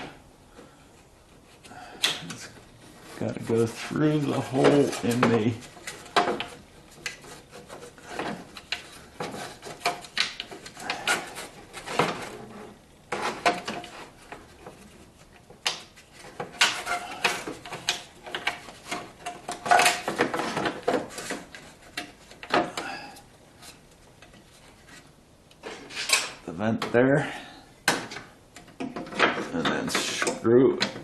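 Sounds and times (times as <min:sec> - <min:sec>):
plastic parts clicking and rattling: 0:04.3 - 0:12.5, 0:13.1 - 0:22.9, 0:27.8 - 0:31.0.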